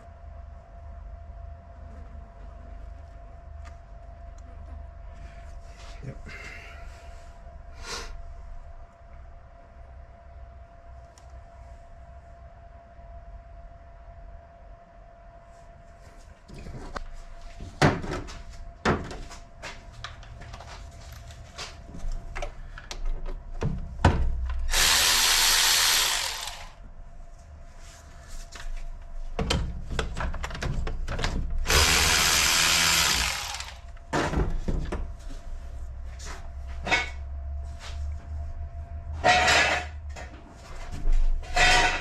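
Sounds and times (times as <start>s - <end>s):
power tool running: 24.7s - 26.8s, 31.7s - 33.9s.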